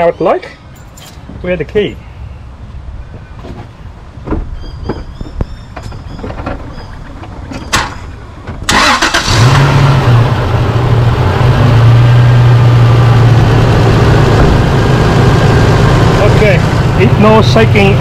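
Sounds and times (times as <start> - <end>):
engine idling: 7.1 - 18.0
starter cranking: 8.7 - 9.4.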